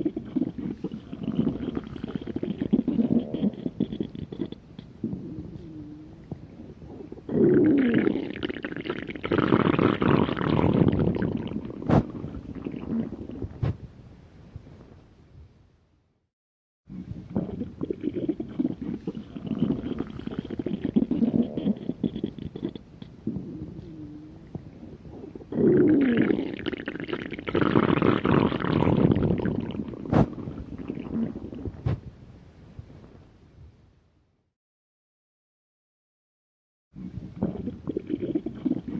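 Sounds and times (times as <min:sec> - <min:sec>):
stomach growling: 0:00.0 - 0:13.9, 0:16.9 - 0:32.1, 0:37.0 - 0:38.9
stomach gurgling: 0:00.0 - 0:13.9, 0:16.9 - 0:32.1, 0:37.0 - 0:38.9
short sharp pops: 0:11.9 - 0:12.1.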